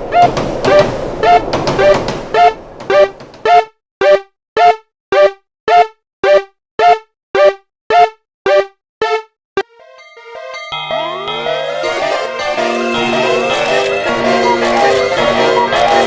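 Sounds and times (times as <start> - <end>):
held tones and rising glide: 10.0 - 14.3
railway crossing alarm ringing: 10.0 - 15.0.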